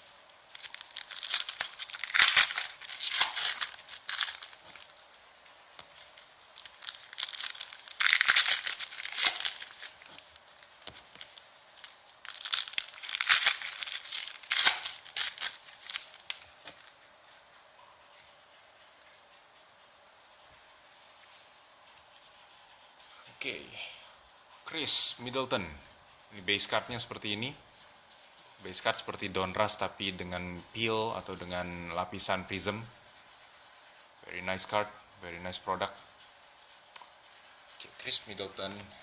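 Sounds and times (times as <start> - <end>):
foil wrappers tearing and crinkling: 0.5 - 5.2, 5.9 - 17.0.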